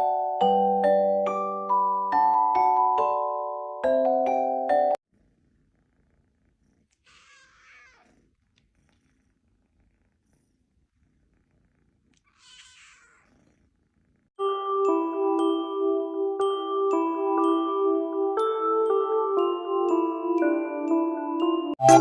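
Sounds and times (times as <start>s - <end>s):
cat purring: 5.0s - 14.4s
xylophone-like music: 14.4s - 22.0s.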